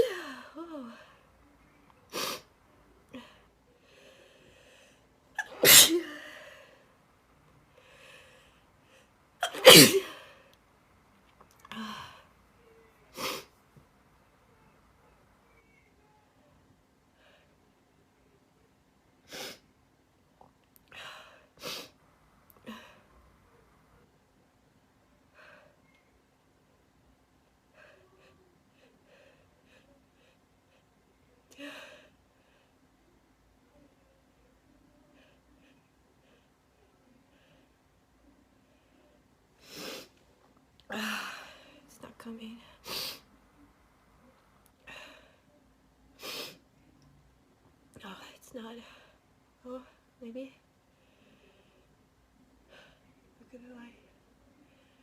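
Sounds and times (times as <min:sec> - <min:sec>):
girl sneezing: 0:05.4 - 0:06.2, 0:09.4 - 0:10.2.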